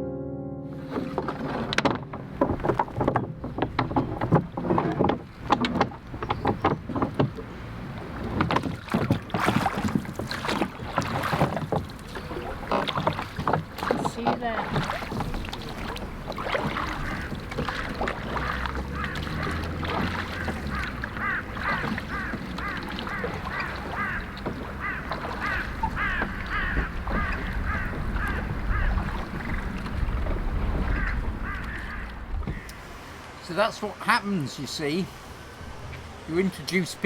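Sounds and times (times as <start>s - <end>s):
ducks quacking: 16.4s - 29.3s, 30.8s - 32.9s.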